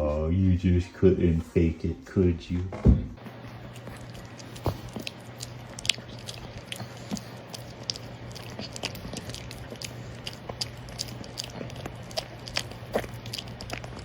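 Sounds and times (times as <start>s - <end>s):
steady low hum: 0.0s - 14.0s
chewing crunching clicks: 3.6s - 14.0s.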